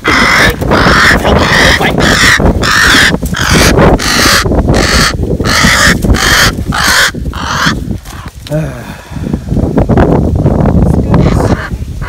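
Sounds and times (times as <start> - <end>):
crow cawing harshly: 0.0 - 7.8.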